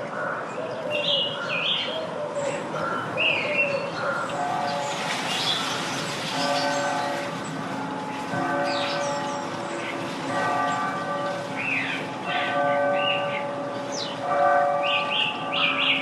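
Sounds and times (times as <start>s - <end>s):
church clock bells striking: 4.0s - 16.0s.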